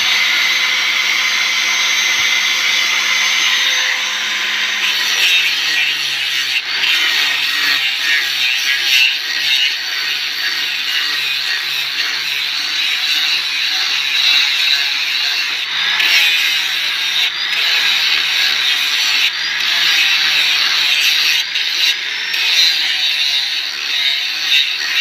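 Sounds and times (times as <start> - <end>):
tool scraping wood: 0.0 - 13.0.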